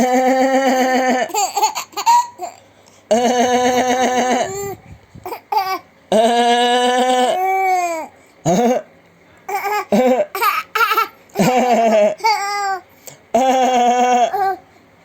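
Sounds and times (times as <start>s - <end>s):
small child laughing: 0.0s - 2.6s, 3.4s - 5.8s, 9.5s - 12.8s.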